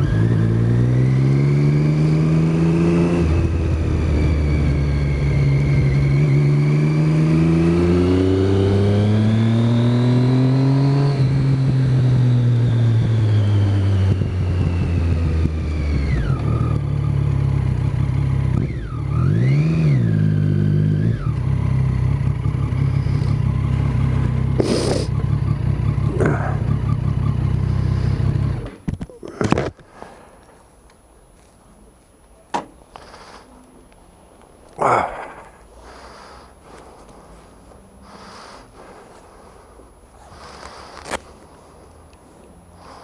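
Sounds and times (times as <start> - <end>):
motorcycle engine revving: 0.0 - 29.8, 42.6 - 43.0.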